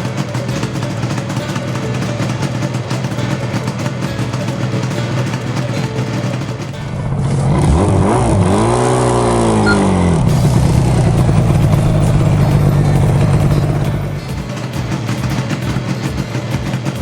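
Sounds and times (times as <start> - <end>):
two-stroke engine revving: 0.0 - 17.0.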